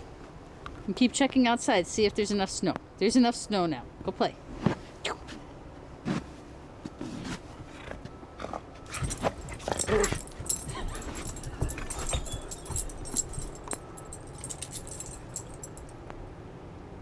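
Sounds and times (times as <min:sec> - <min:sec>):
dog whimpering: 0:08.9 - 0:13.7.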